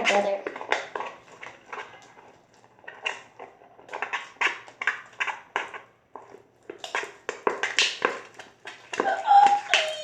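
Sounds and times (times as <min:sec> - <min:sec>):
slime squeezed with sticky pops: 0:02.8 - 0:10.0.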